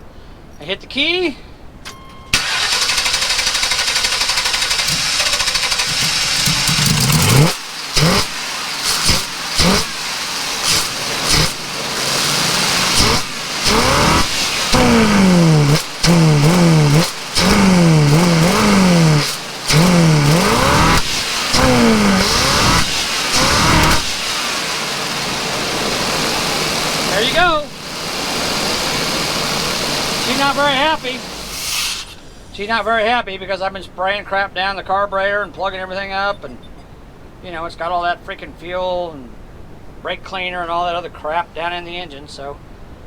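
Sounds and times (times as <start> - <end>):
engine running rough and revving: 2.4 - 31.6.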